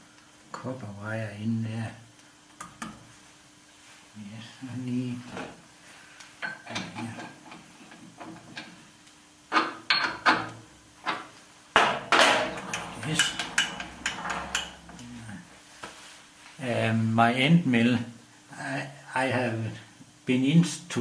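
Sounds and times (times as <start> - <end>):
steel parts clinking and knocking: 11.8 - 15.0.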